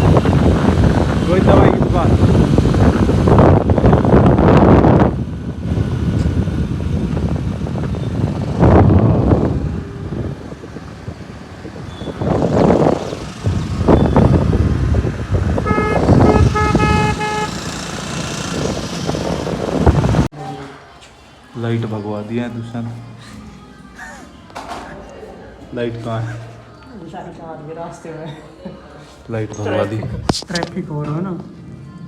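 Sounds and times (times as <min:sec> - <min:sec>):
busy road traffic: 0:00.0 - 0:20.3
vehicle horn honking: 0:15.5 - 0:18.2.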